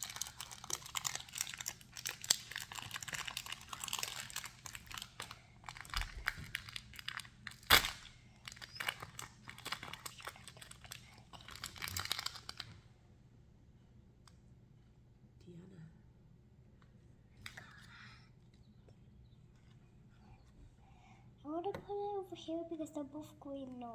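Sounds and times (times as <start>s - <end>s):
plastic packaging crinkling and tearing: 0.0s - 12.8s.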